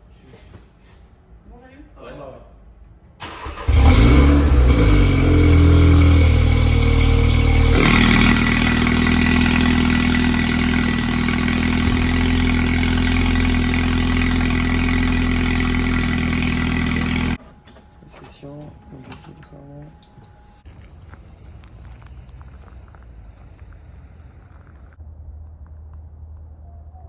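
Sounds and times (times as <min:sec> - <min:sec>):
car engine revving then idling: 0:03.2 - 0:17.4.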